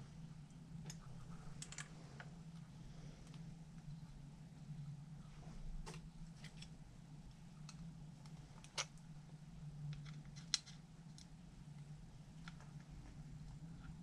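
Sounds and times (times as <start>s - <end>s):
steady low hum: 0.0s - 14.0s
small plastic parts clicking: 1.6s - 1.9s, 9.9s - 11.4s.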